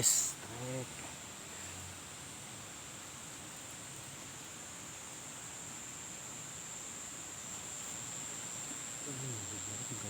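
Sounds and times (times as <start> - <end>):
high-pitched insect trill: 0.0 - 0.4, 5.8 - 10.0
outdoor hiss: 0.0 - 10.0.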